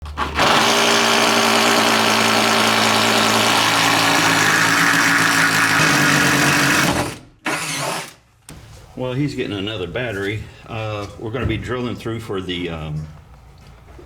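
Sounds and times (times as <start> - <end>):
cordless drill boring through wall: 0.0 - 8.2.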